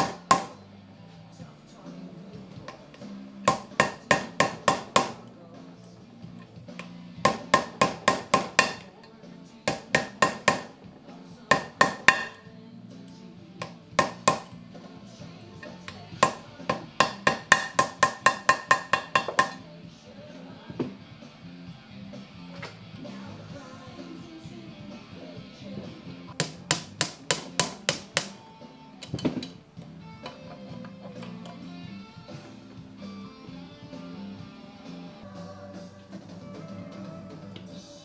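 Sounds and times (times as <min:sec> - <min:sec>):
hammer tapping: 0:00.0 - 0:00.6, 0:02.6 - 0:05.2, 0:06.8 - 0:08.9, 0:09.7 - 0:10.8, 0:11.5 - 0:12.4, 0:13.6 - 0:14.5, 0:15.6 - 0:19.6, 0:26.3 - 0:28.4
background music: 0:00.0 - 0:38.0.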